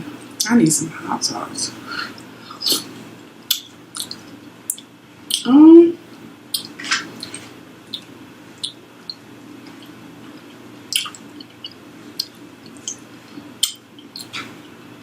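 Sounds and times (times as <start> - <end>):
faint low hum: 0.0 - 15.0
person chewing: 2.1 - 5.4, 6.5 - 8.8, 9.7 - 14.6
wet mouth noises: 2.1 - 5.5, 6.5 - 14.6.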